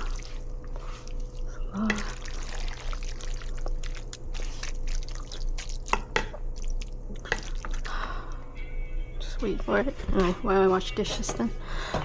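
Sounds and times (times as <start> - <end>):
water trickling and dripping: 0.0 - 7.9
electrical hum: 0.0 - 12.0.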